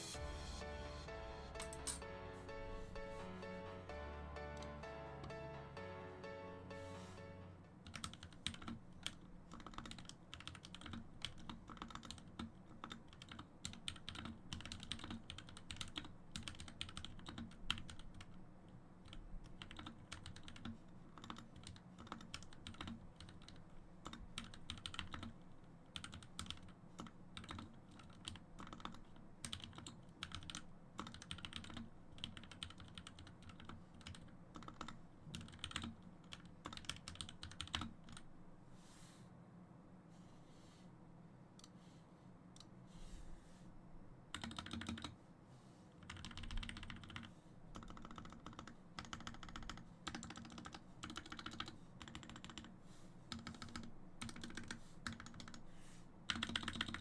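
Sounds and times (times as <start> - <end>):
mechanical keyboard typing: 7.8 - 18.4, 19.0 - 38.2, 44.3 - 45.2, 46.0 - 52.7, 53.3 - 55.6, 56.3 - 57.0.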